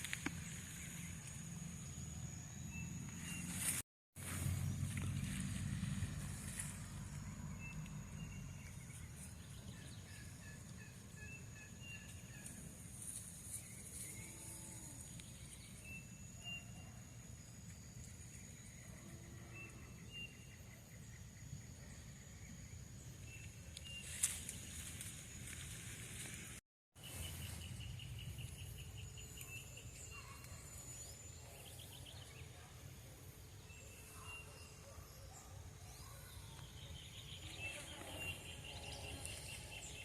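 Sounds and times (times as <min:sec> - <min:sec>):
birds chirping: 0:27.0 - 0:40.0.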